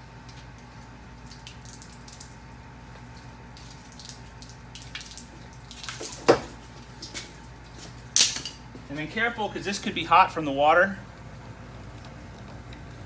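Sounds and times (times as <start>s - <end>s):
small water drips: 0.2s - 7.4s
water trickling from hose: 0.6s - 7.5s.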